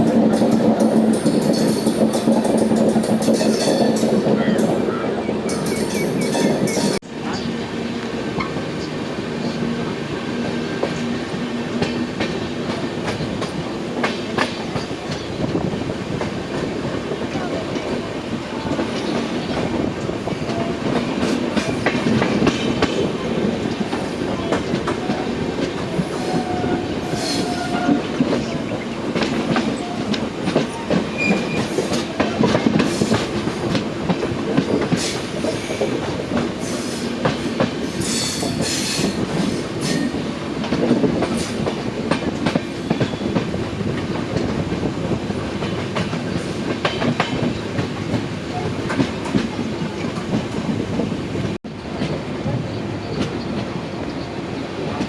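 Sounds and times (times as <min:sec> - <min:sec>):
wheels clicking over rail joints: 0:00.0 - 0:08.6, 0:10.4 - 0:51.2
train rumbling on rails: 0:00.0 - 0:55.0
wheel squeals: 0:29.6 - 0:32.1.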